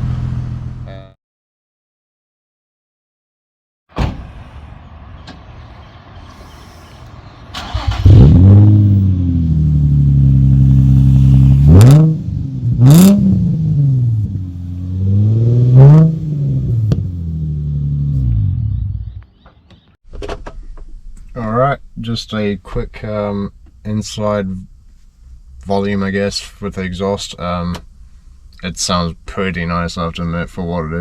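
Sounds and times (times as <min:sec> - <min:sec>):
car engine starting: 0:04.0 - 0:19.4
car engine idling: 0:04.2 - 0:18.2, 0:20.8 - 0:30.0
car engine revving: 0:05.6 - 0:19.2.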